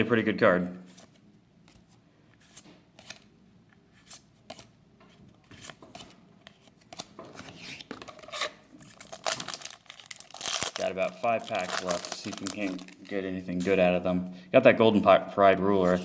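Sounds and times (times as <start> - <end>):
cards rustling: 0.9 - 3.3, 5.3 - 14.0
trading cards flicking and sliding: 0.9 - 3.3.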